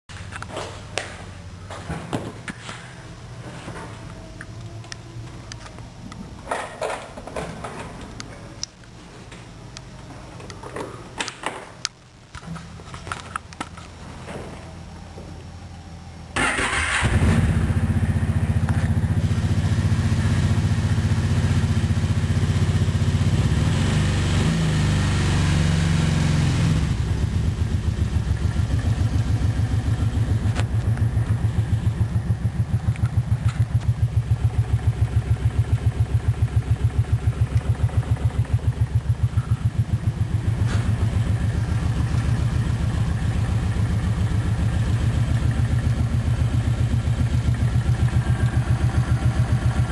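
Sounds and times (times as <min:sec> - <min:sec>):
engine clicking at idle: 0:16.4 - 0:19.7, 0:27.0 - 0:49.9
atv engine running: 0:16.4 - 0:49.9.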